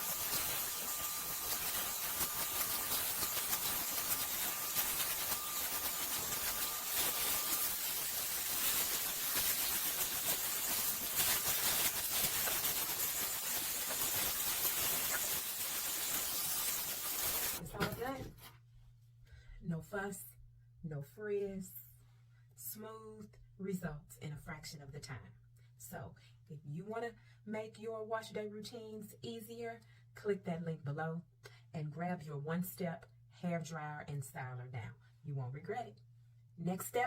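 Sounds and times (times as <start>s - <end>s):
hair dryer brush blowing air: 0.0s - 17.6s
faint high whine: 0.0s - 17.7s.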